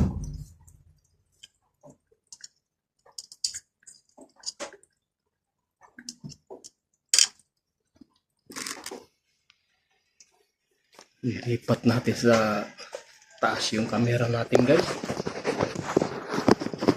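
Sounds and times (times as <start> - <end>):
scraping rustle: 13.7 - 16.9.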